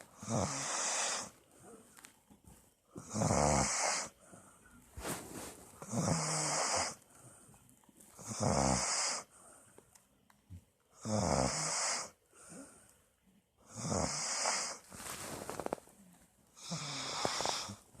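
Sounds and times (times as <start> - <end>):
person snoring: 0.2 - 1.3, 3.0 - 4.1, 5.8 - 7.0, 8.2 - 9.3, 11.0 - 12.1, 13.7 - 15.8, 16.6 - 17.9.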